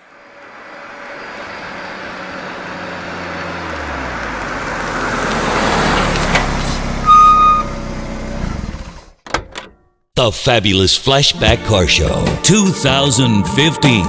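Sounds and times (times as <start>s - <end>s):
vehicle engine running: 0.0s - 9.2s
short high-pitched beep: 7.0s - 7.7s.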